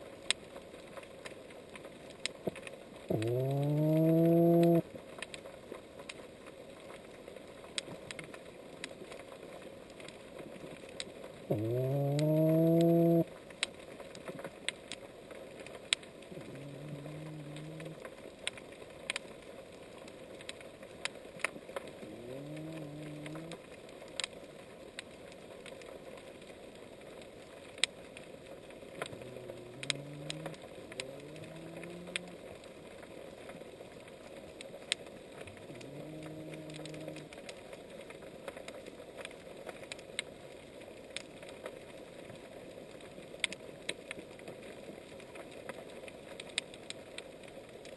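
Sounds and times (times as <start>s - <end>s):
low underwater animal calls: 3.1s - 4.9s, 11.5s - 13.3s, 16.3s - 18.1s, 21.9s - 23.6s, 29.0s - 32.6s, 35.4s - 37.5s.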